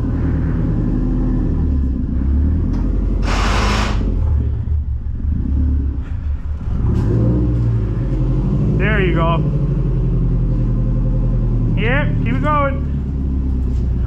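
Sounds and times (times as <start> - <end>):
car engine revving: 0.0 - 14.0
turbo air hiss: 3.2 - 4.1.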